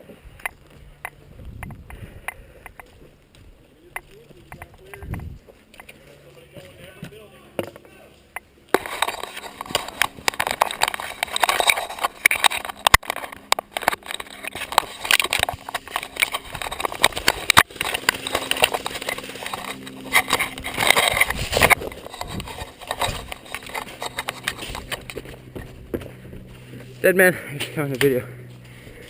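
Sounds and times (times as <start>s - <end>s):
hurried footsteps: 0.0s - 29.0s
gear rattling and knocking: 8.8s - 26.4s.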